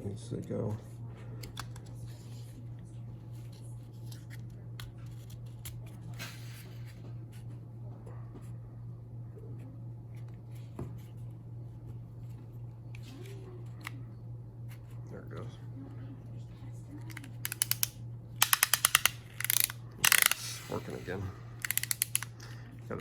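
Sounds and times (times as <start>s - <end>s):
steady low hum: 0.0s - 23.0s
plastic parts clicking and scraping: 17.1s - 21.0s, 21.6s - 22.6s.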